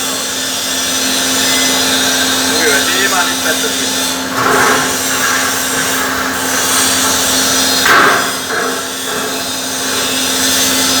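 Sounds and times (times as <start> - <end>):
welding machine hum: 0.0 - 11.0
arc welding crackling hiss: 1.4 - 11.0.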